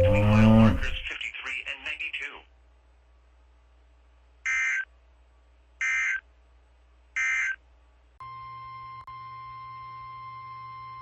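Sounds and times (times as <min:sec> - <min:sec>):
steady electronic alert tone: 0:00.0 - 0:01.1.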